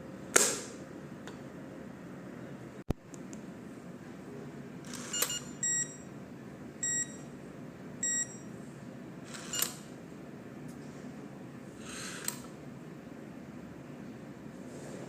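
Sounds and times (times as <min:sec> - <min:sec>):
door lock short beeps: 0:04.9 - 0:06.0, 0:06.8 - 0:07.2, 0:08.0 - 0:08.4, 0:09.4 - 0:09.8.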